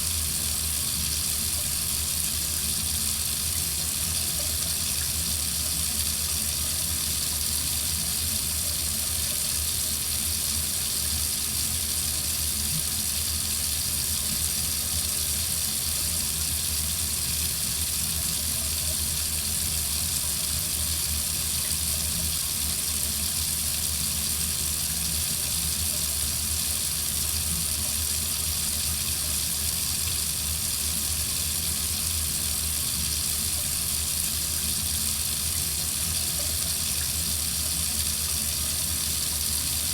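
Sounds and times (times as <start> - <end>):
water running from a faucet: 0.0 - 39.9.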